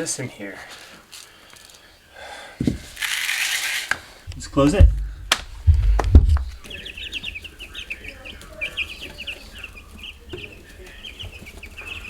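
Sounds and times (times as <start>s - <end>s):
chicks peeping: 4.0s - 12.0s.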